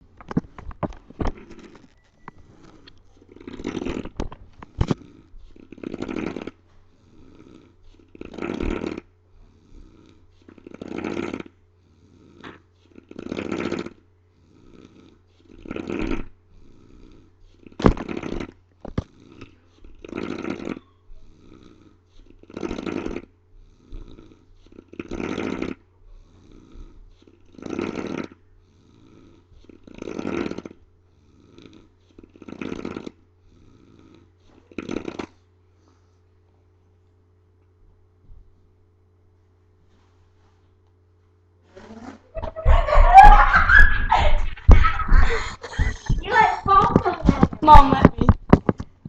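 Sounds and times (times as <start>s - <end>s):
man snoring loudly: 4.9s - 18.5s, 19.1s - 26.9s, 27.5s - 35.3s.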